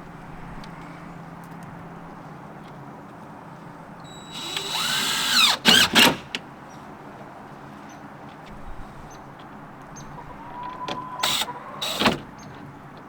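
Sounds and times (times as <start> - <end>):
power drill spinning: 4.1 - 6.3, 11.2 - 12.2.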